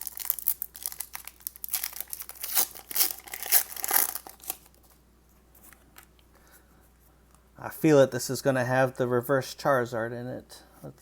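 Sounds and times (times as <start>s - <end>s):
foil wrapper crinkling and tearing: 0.0s - 4.9s.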